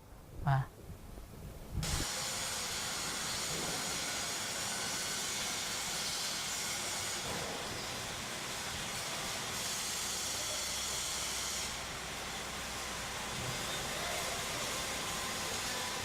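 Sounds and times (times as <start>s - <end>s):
welding arc hissing crackle: 1.8s - 16.0s.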